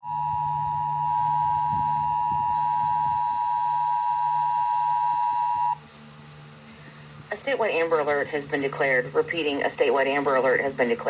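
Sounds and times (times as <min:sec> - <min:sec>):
faint low hum: 0:00.0 - 0:11.0.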